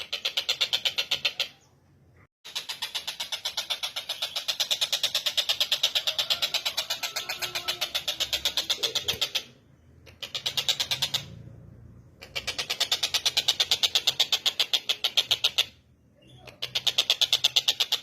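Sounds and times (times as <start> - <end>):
kingfisher chattering call: 2.5 - 9.5.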